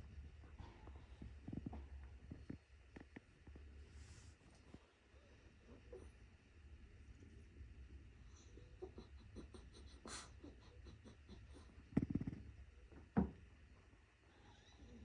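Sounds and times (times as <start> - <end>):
dog snoring softly: 11.5 - 12.6.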